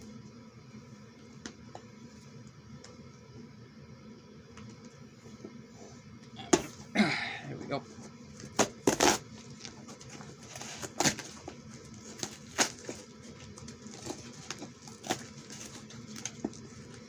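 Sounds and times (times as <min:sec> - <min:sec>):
packaging clicks and crinkles: 0:08.4 - 0:17.0.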